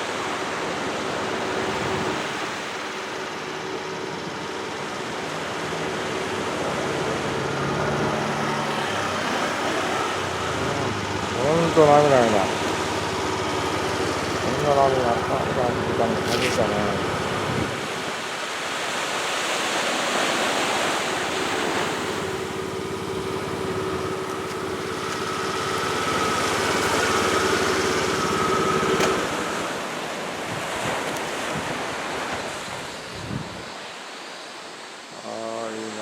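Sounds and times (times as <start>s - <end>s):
steady hum: 0.0s - 18.2s
sea rushing at the shore: 0.0s - 36.0s
wind: 0.0s - 36.0s.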